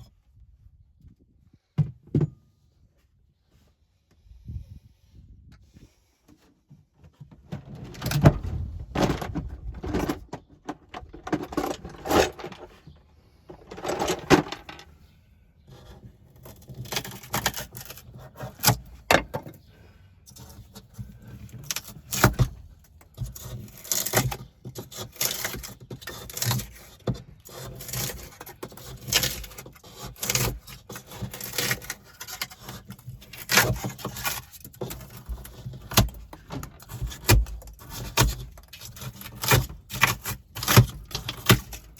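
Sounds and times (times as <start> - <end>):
tools and metal clattering: 7.6 - 15.1.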